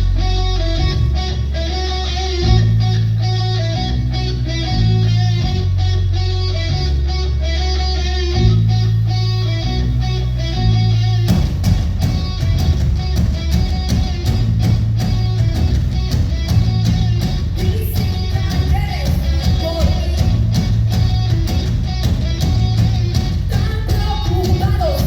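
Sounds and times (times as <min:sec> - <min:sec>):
bass guitar: 0:00.0 - 0:25.0
distorted electric guitar: 0:00.0 - 0:25.0
drum kit beats: 0:11.3 - 0:25.0.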